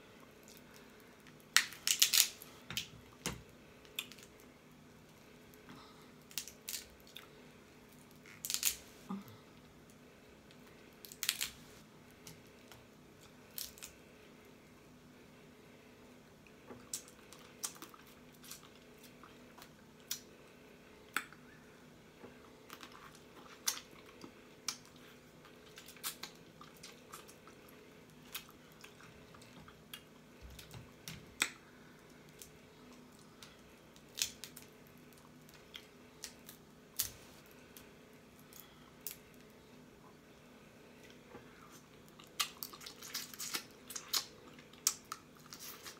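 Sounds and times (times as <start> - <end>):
faint steady hum: 0.0 - 45.9
crab shell cracking: 1.5 - 2.9, 8.3 - 8.8, 34.0 - 34.7
wet chewing and lip smacking: 41.7 - 45.9.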